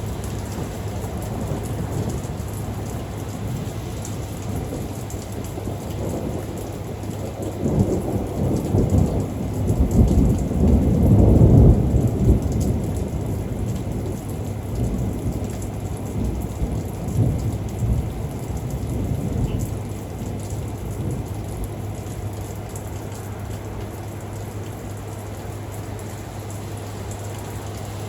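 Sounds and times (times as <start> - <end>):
steady rain: 0.0 - 28.0
thunder rolling: 7.4 - 15.4.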